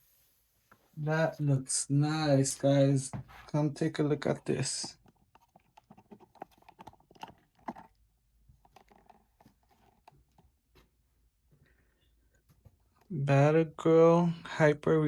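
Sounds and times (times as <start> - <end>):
cardboard box handled: 4.8 - 10.6.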